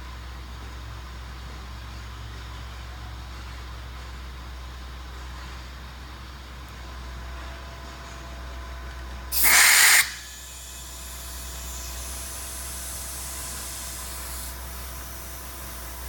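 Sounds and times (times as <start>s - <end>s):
compressed air hissing: 9.3s - 16.0s.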